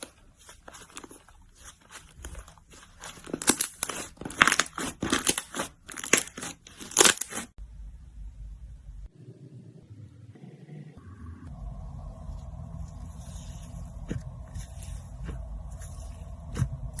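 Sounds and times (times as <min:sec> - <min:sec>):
slime crackling and popping: 0:00.0 - 0:07.5
low hum: 0:07.6 - 0:17.0.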